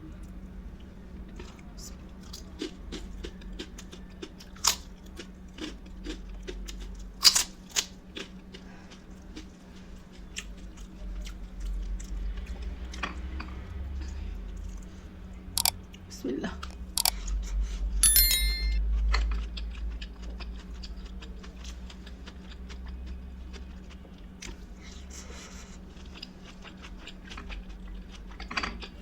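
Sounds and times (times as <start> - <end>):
dishes and utensils clinking: 18.0 - 18.8.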